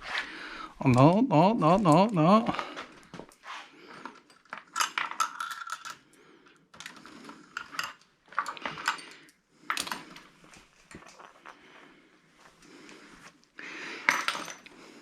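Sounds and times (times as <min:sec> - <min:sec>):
metal parts clinking: 0:04.2 - 0:06.0, 0:06.8 - 0:10.1.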